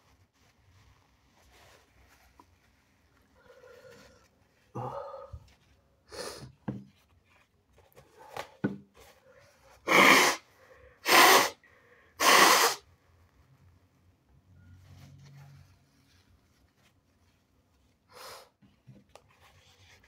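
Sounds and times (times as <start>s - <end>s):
person sniffing: 6.1s - 6.6s, 9.7s - 12.8s, 18.1s - 18.6s
forceful nose blasts: 9.9s - 10.4s, 11.0s - 11.6s, 12.2s - 12.8s.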